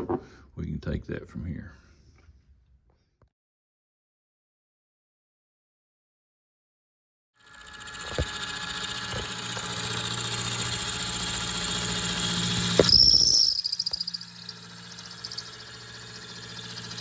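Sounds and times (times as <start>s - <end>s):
grinder motor hum: 7.4s - 17.0s
high grinding squeal: 7.4s - 17.0s
steel being ground: 7.4s - 17.0s.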